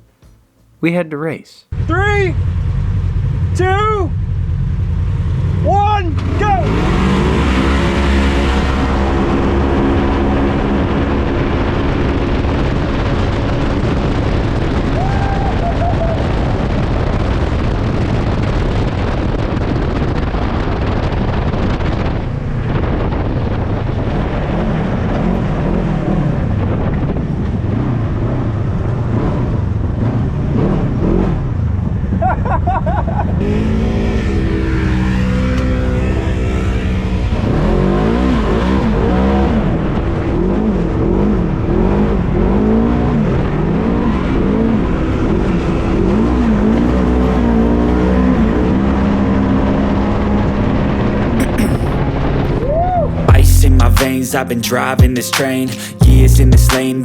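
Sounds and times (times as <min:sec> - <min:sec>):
off-road vehicle engines revving: 0:05.0 - 0:15.0, 0:24.4 - 0:52.6.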